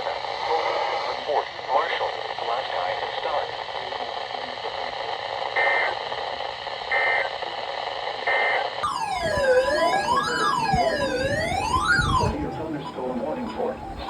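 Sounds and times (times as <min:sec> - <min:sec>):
radio static: 0:00.0 - 0:14.0
short data-burst beeps: 0:08.8 - 0:13.7
sweeping electronic siren: 0:08.8 - 0:13.8.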